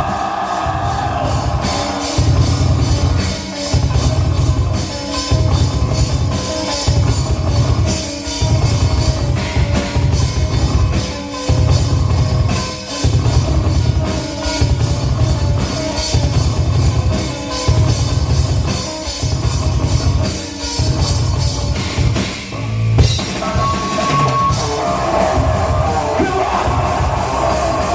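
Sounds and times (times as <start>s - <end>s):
pounding bass drum: 0.0s - 22.3s
rock band playing: 0.0s - 27.9s.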